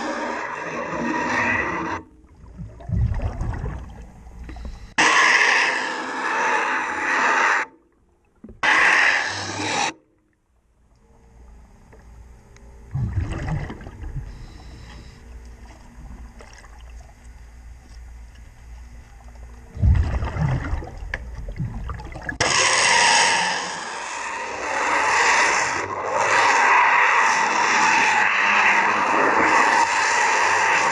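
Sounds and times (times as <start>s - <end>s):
steady low underwater hum: 0.0s - 30.9s
regulator exhaust bubbles: 2.2s - 5.0s, 11.3s - 22.4s.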